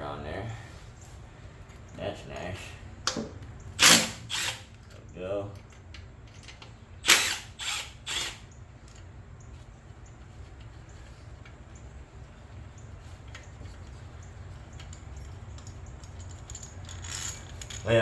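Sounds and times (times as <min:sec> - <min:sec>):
low steady hum: 0:00.0 - 0:18.0
hand tools clicking and clinking: 0:14.7 - 0:18.0.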